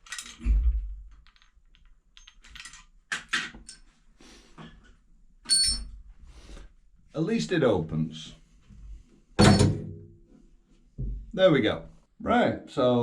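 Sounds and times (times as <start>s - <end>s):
sharp metallic clink: 5.5s - 5.9s.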